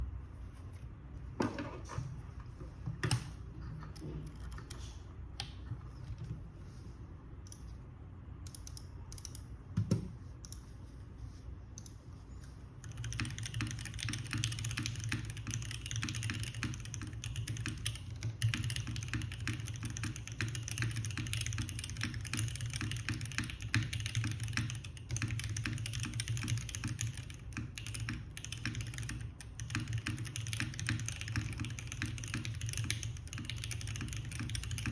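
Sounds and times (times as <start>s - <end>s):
typing on mechanical keyboard: 12.8s - 34.9s.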